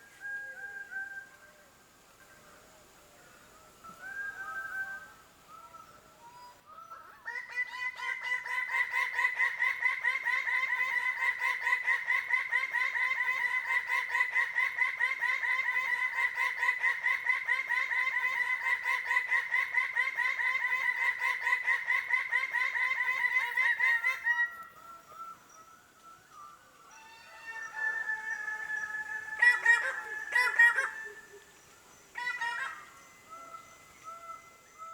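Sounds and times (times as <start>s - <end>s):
birds calling harshly: 10.5s - 34.9s.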